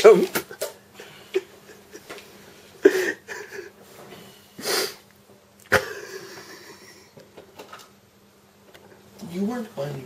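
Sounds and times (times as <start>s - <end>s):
person sniffing: 4.4s - 5.1s.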